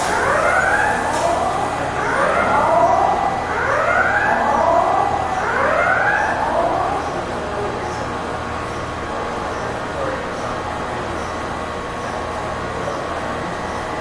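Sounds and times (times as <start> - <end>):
siren rising in pitch: 0.0 - 7.7.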